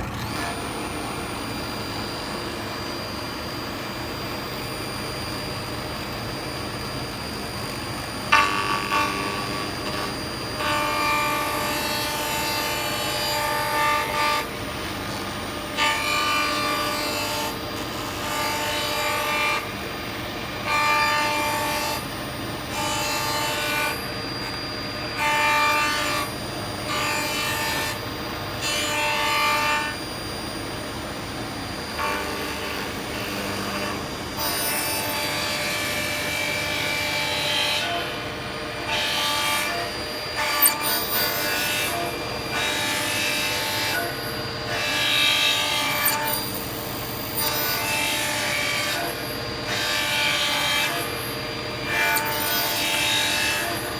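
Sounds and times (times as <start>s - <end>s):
panel saw blade running: 0.0s - 14.6s, 31.6s - 53.9s
saw cutting with ringing tone: 0.0s - 53.9s.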